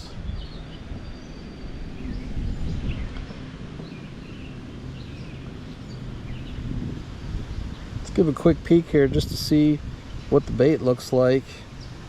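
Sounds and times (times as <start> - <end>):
low rumbling noise: 0.0 - 12.0.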